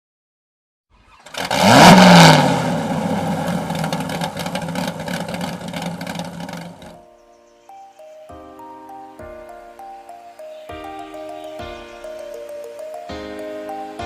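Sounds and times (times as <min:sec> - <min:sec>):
car engine starting and revving: 0:00.9 - 0:07.0.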